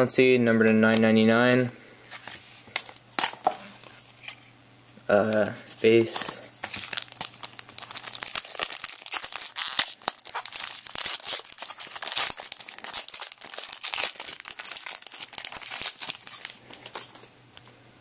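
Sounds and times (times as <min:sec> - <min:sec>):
cards being handled: 0:02.1 - 0:04.4, 0:05.2 - 0:17.7
card pack wrapper crinkling: 0:06.1 - 0:17.7.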